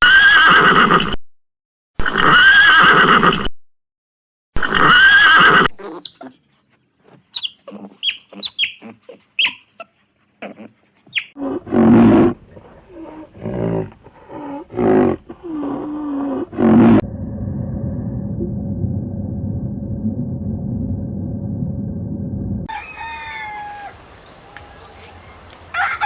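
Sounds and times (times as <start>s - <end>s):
animal calls: 7.3s - 17.0s, 22.7s - 26.0s.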